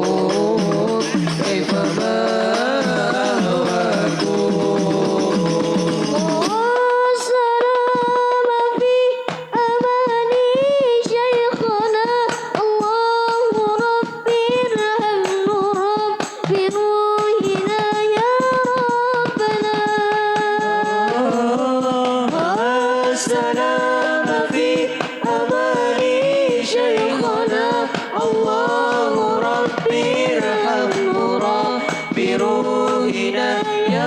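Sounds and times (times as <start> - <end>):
child singing melody: 6.2 - 21.1.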